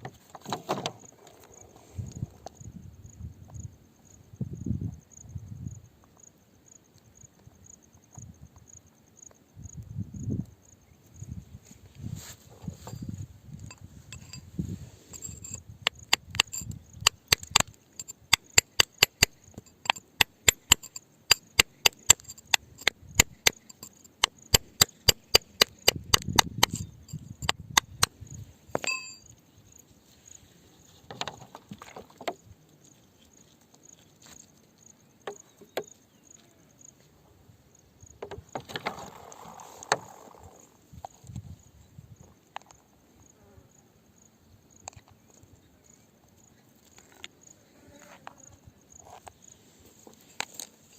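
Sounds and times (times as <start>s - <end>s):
crickets chirping: 0.0s - 50.9s
hammer striking rock: 15.2s - 28.1s, 28.8s - 29.2s.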